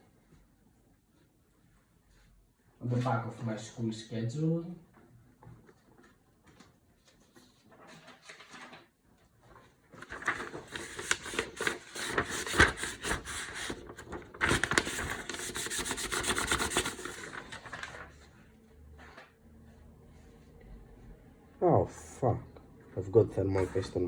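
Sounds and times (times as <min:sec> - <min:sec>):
scratchy rubbing on paper: 0:10.7 - 0:17.4.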